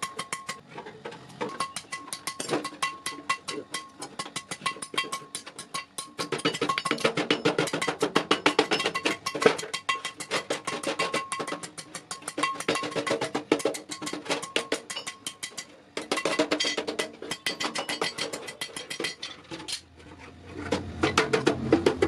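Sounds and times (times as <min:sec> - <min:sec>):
wood-block percussion beat: 0:01.6 - 0:19.2.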